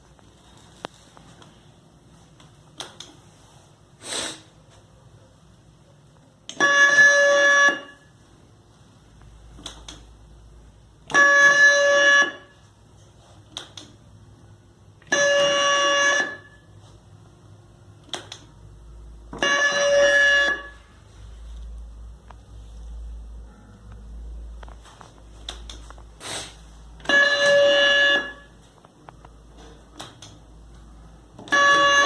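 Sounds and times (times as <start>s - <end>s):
electronic quiz buzzer: 6.6s - 8.1s, 15.0s - 16.6s, 19.4s - 20.9s, 27.0s - 28.6s, 31.5s - 32.0s.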